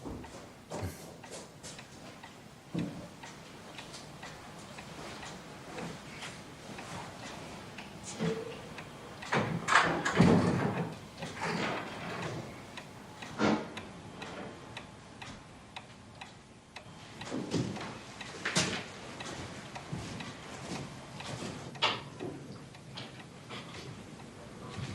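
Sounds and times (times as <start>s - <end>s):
clock ticking: 0.0s - 18.3s.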